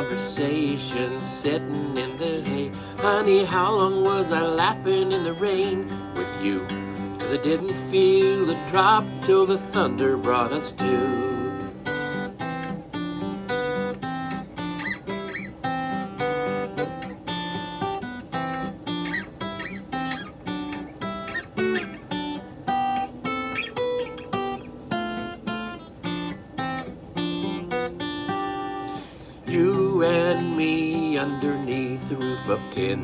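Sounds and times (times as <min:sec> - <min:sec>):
acoustic guitar strumming: 0:00.0 - 0:33.0.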